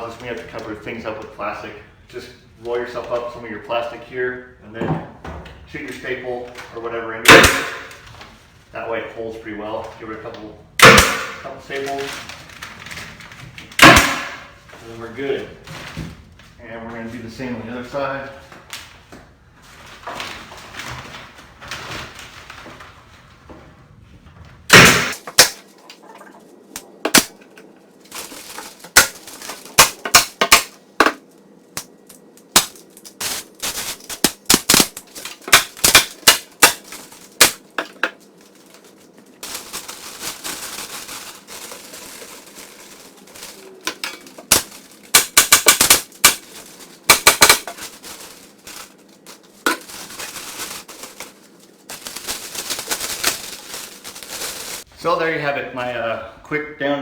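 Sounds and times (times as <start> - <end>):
staple gun shots: 7.3 - 7.8, 24.7 - 25.5.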